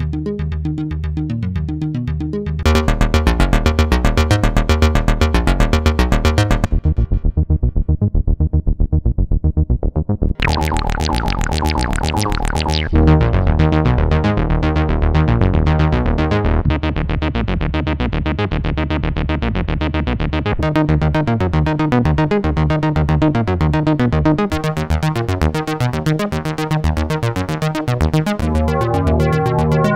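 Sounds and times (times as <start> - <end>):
synthesizer sequenced pattern: 0.0 - 8.0, 10.3 - 17.0, 20.6 - 29.9
heavy synth bass: 0.0 - 29.9
bright high synth layer: 10.4 - 13.0.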